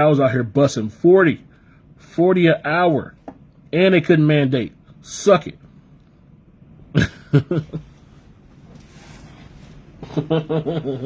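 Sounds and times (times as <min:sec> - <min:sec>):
man speaking: 0:00.0 - 0:05.6
faint room hiss: 0:00.0 - 0:11.0.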